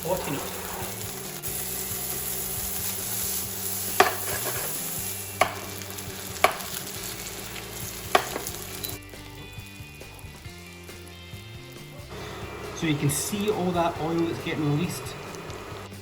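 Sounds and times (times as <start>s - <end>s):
sausage sizzling in a pan: 0.0s - 16.0s
utensil knocking against pan: 4.0s - 4.6s, 5.4s - 5.7s, 6.4s - 6.7s, 8.1s - 8.6s.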